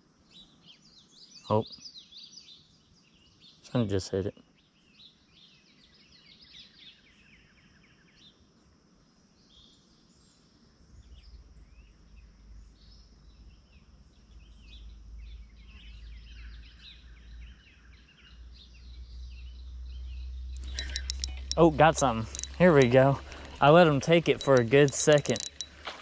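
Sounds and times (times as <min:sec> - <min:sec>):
birds chirping and singing: 0:20.6 - 0:26.0.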